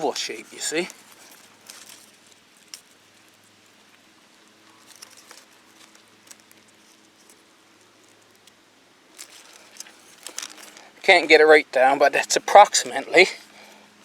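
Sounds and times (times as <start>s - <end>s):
light clicks and rustles: 0.0s - 11.1s.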